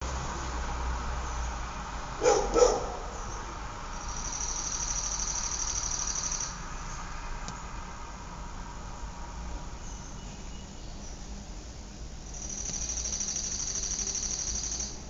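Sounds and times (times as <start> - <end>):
distant traffic rumble: 0.0 - 15.0
dog barking: 2.2 - 3.2
high rapid insect trill: 3.1 - 7.3, 12.1 - 15.0.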